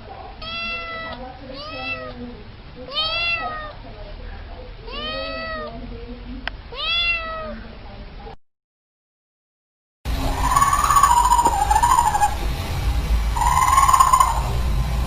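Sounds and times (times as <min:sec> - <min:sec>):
cat meowing: 0:00.4 - 0:02.2, 0:02.9 - 0:03.8, 0:04.9 - 0:05.7, 0:06.7 - 0:07.6.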